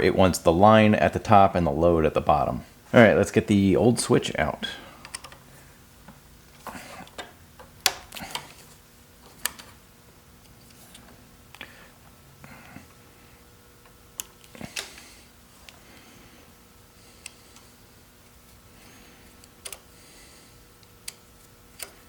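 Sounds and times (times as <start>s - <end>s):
sharp clicks of metal parts: 5.0s - 5.4s, 19.4s - 19.9s, 20.8s - 22.0s.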